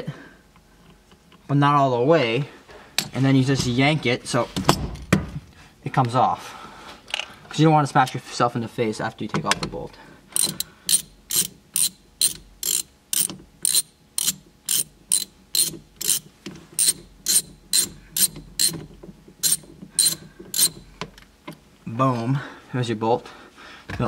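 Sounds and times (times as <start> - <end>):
ratchet wrench clicking: 10.4 - 18.8, 19.4 - 20.8.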